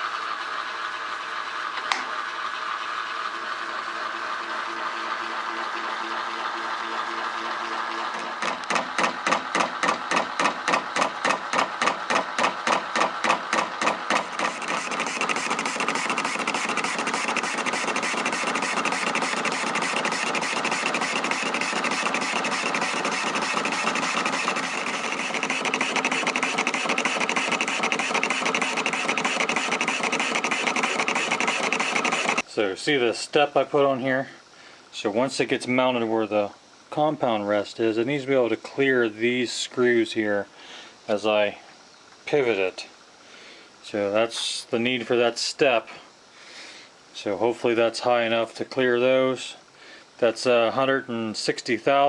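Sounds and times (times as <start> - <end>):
metal lathe cutting: 2.8 - 32.4.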